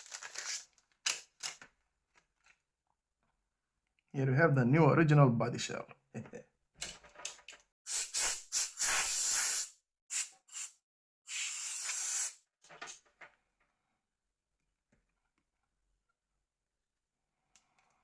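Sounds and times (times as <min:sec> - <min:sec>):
plastic wrapping crinkling: 0:00.0 - 0:02.5.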